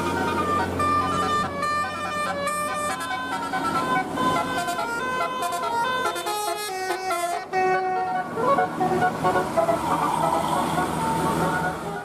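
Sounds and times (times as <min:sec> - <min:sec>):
musical bus horn playing a tune: 0:00.0 - 0:12.0.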